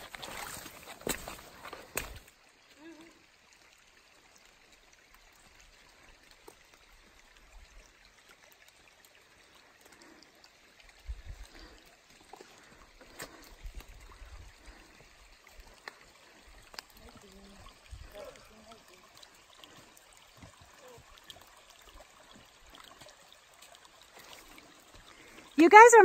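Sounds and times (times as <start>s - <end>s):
running water rushing: 0.0s - 26.0s.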